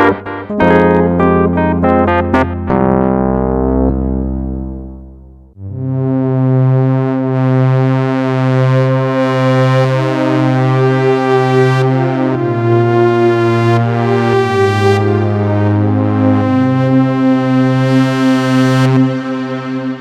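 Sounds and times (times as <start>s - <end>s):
synthesizer pad chords: 0.0s - 20.0s.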